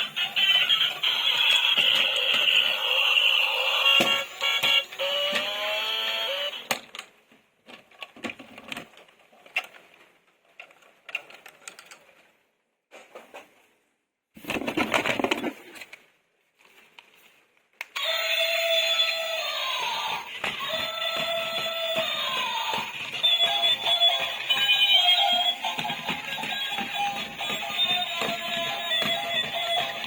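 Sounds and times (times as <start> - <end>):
plastic toys rattling: 6.5 - 12.3, 14.4 - 16.0, 18.0 - 30.0.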